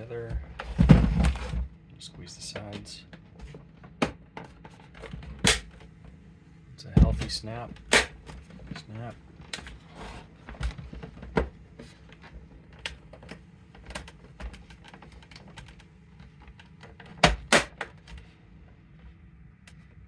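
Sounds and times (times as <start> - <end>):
plastic snapping together: 5.4 - 5.8.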